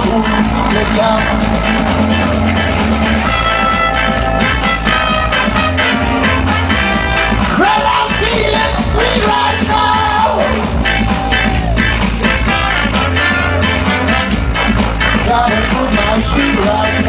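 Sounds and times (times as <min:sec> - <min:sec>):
person singing: 0:00.0 - 0:02.3, 0:07.5 - 0:11.7, 0:15.0 - 0:17.0
heavy bass: 0:00.0 - 0:17.0
live band playing ska song: 0:00.0 - 0:17.0.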